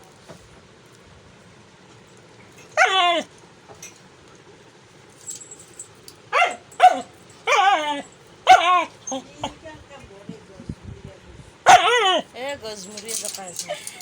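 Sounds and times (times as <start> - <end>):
dog whining: 2.6 - 3.3, 6.3 - 9.6, 11.7 - 12.3
dog yelping: 2.7 - 3.3, 6.3 - 9.5, 11.7 - 12.3.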